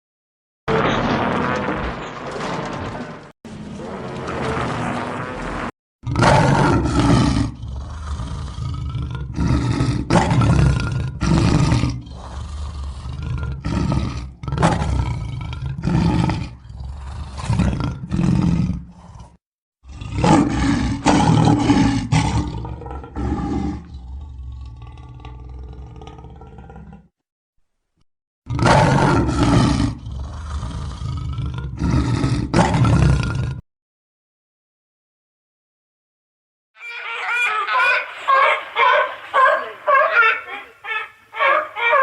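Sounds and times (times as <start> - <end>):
lion roaring: 6.0 - 27.1, 28.5 - 33.6.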